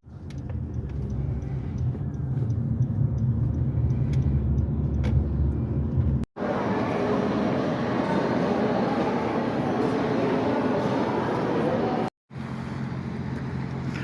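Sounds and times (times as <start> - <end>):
vehicle rumble from inside: 0.0 - 6.3.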